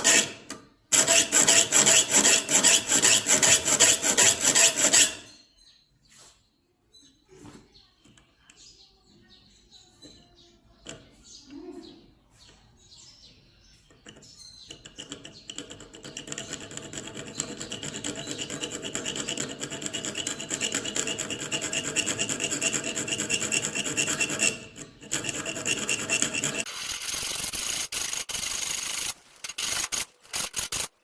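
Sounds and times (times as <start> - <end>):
metal file sharpening saw teeth: 0.0 - 5.4, 16.1 - 31.0.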